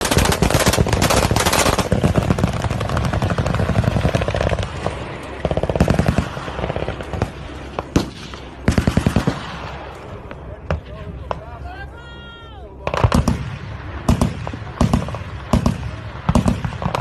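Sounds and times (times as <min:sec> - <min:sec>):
automatic gunfire bursts: 0:00.0 - 0:04.7, 0:07.9 - 0:09.5, 0:12.9 - 0:17.0.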